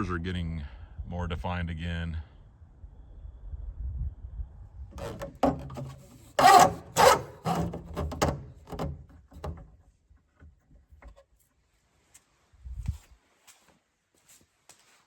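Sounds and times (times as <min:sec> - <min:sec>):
rubbing and scraping: 0:05.0 - 0:09.8.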